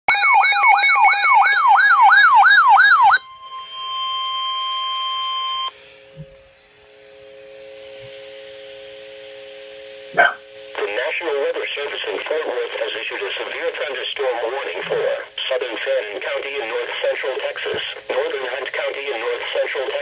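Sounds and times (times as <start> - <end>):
siren-like alert wail: 0.1 - 5.7.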